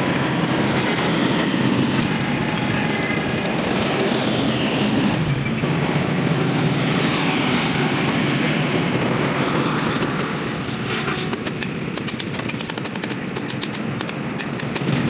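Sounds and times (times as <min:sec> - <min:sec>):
rapid sharp clicks: 0:00.6 - 0:05.8, 0:11.3 - 0:15.0.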